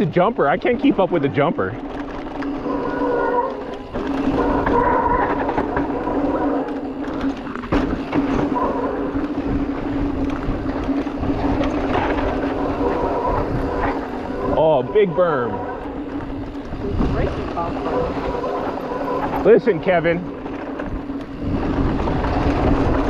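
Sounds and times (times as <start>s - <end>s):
electric bike motor whining: 0.0s - 23.0s
tyres on dirt trail: 0.0s - 23.0s
wind rumble: 0.0s - 23.0s.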